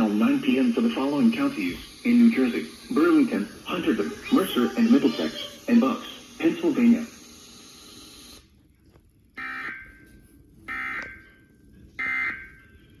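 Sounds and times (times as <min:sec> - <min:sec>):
harsh digital data bursts: 0:00.4 - 0:08.4.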